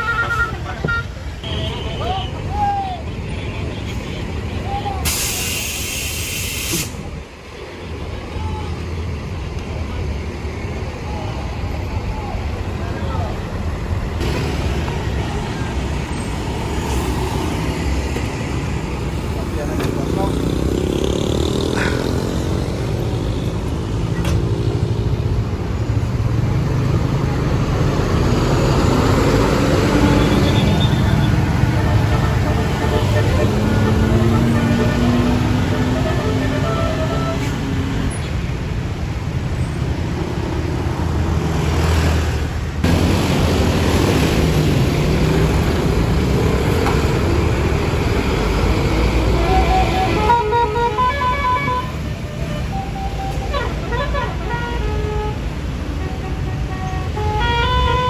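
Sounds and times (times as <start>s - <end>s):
large vehicle engine rumbling: 0.0s - 58.0s
traffic noise: 0.0s - 58.0s
multi-trumpet horn melody: 31.7s - 37.8s, 49.2s - 58.0s.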